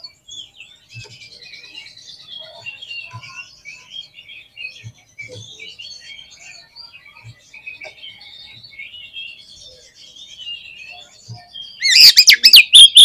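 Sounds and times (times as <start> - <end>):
bird singing chattering notes: 10.8 - 13.0.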